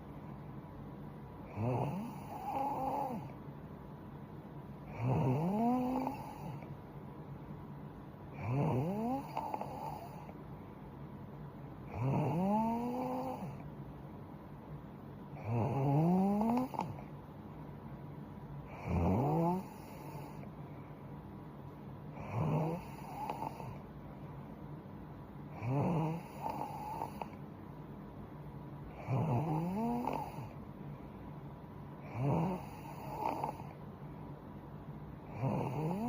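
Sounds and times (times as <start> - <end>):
woman snoring: 1.5 - 3.4, 4.9 - 6.7, 8.4 - 10.4, 11.9 - 13.6, 15.4 - 17.1, 18.7 - 20.5, 22.2 - 23.8, 25.5 - 27.4, 28.9 - 30.6, 32.0 - 33.8, 35.3 - 36.0.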